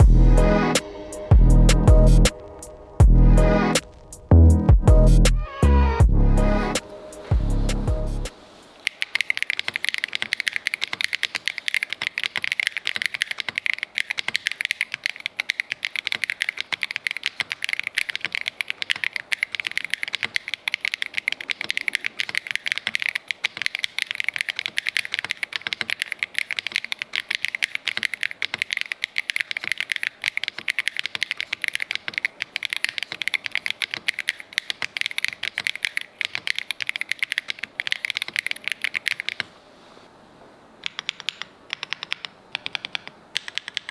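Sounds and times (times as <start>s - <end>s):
mechanical keyboard typing: 8.8s - 39.5s, 40.8s - 43.9s.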